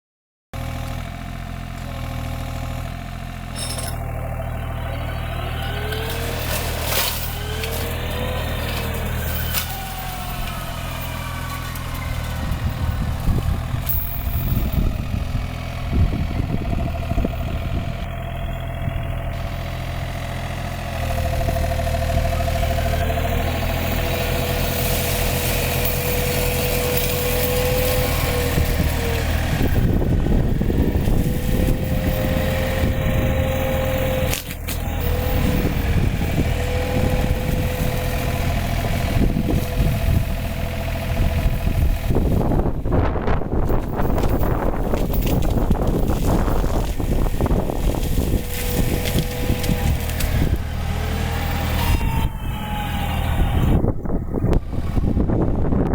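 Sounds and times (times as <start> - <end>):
machine engine running: 0.7 - 51.9
brush crackling being shredded: 5.8 - 15.7, 19.4 - 42.6, 43.5 - 51.8
whining rotor: 21.0 - 55.8.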